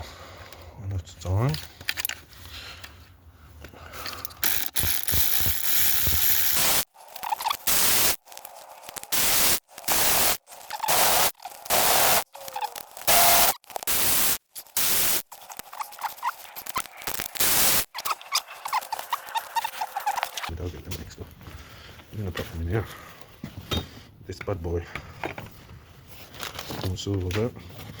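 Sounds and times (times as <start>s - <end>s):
pressurised jet hissing: 4.4s - 8.2s, 9.0s - 15.2s, 17.4s - 17.9s.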